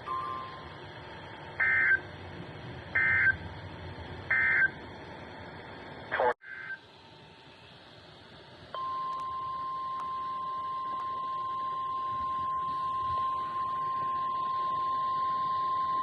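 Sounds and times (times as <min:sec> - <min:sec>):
steady high alarm tone: 0:03.0 - 0:03.4, 0:04.3 - 0:04.7, 0:08.8 - 0:16.0.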